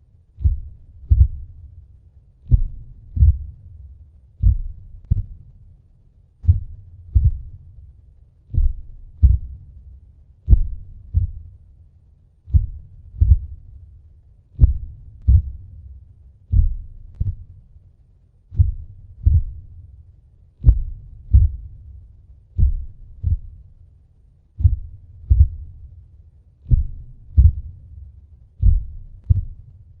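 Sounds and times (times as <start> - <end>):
deep heartbeat thuds: 0.3 - 5.7, 6.3 - 11.8, 12.4 - 17.8, 18.4 - 23.9, 24.5 - 30.0
low rumble: 12.5 - 14.0, 14.6 - 17.7, 18.6 - 20.0, 20.6 - 23.8, 24.6 - 30.0.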